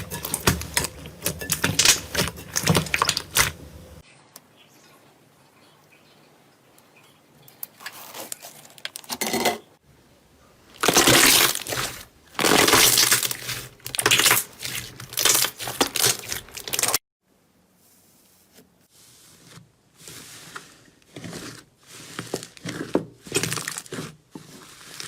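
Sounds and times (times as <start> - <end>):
crunchy slime crackling and popping: 10.8 - 17.0, 22.2 - 25.0.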